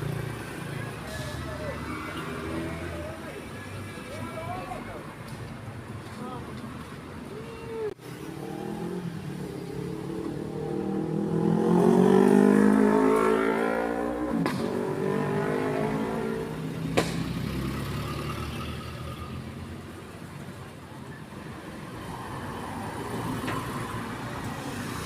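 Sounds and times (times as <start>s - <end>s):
vehicle engine drone passing: 8.0s - 19.5s.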